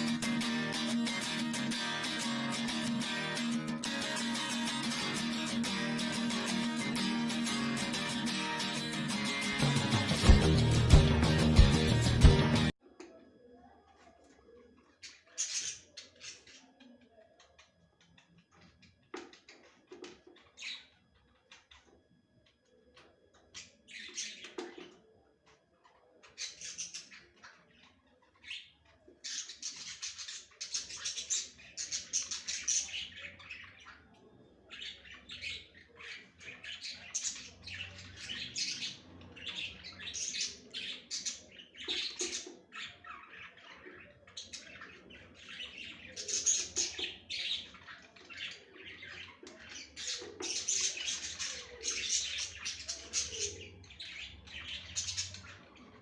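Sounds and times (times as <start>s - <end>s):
budgerigars chattering: 34.8s - 56.0s.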